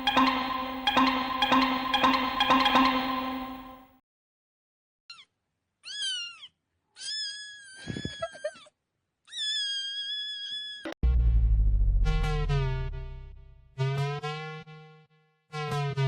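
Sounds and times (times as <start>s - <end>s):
cat meowing: 5.1s - 8.6s, 9.3s - 10.9s.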